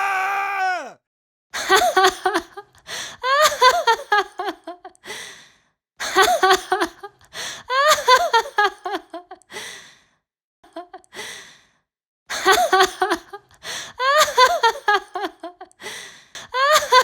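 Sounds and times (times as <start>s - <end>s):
high-pitched vocal sounds: 0.0s - 1.0s.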